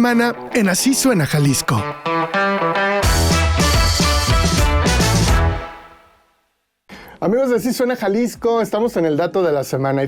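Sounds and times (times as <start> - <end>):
band music jingle with heavy bass: 0.2 - 6.1.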